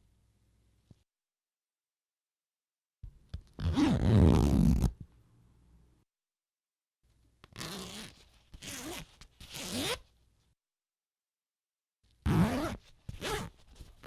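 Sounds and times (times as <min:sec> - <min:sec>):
zipper being pulled: 0:03.6 - 0:05.0, 0:07.6 - 0:10.0, 0:12.3 - 0:13.6.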